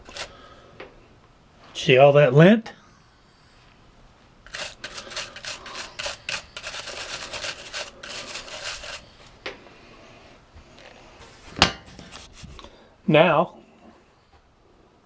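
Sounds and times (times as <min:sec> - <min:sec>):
brush scrubbing a screen: 0:00.0 - 0:00.4, 0:04.5 - 0:09.4.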